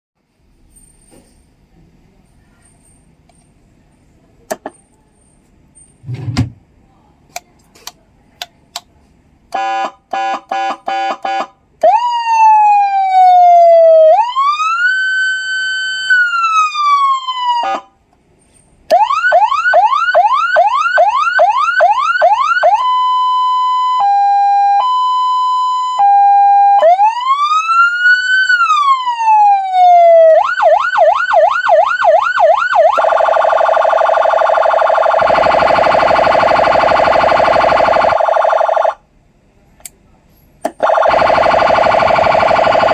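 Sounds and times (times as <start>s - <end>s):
electronic police siren: 9.6s - 17.9s, 18.9s - 39.0s, 40.7s - 42.9s.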